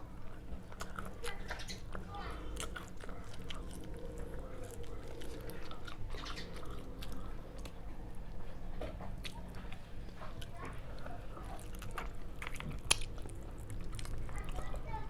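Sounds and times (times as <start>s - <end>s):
small wet clicks and crunches: 0.2s - 7.9s, 8.8s - 15.0s
person biting and chewing: 0.6s - 7.8s, 11.6s - 14.4s.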